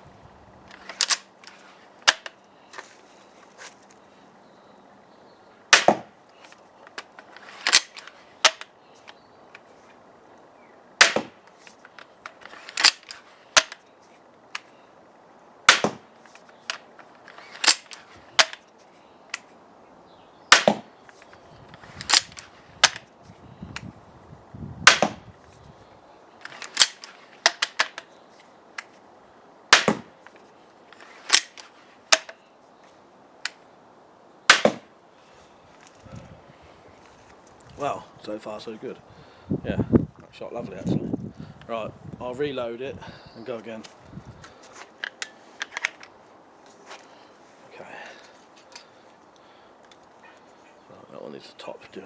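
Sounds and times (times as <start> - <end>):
crossbow snapping and clicking: 0.7 - 3.0, 5.7 - 9.7, 11.0 - 13.9, 15.7 - 19.5, 20.5 - 23.1, 24.9 - 25.2, 26.4 - 28.1, 29.7 - 32.4, 44.4 - 46.2.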